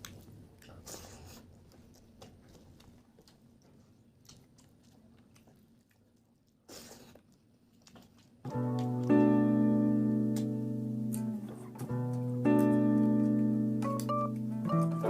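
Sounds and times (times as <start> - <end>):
chewing and wet mouth sounds: 0.0 - 9.2.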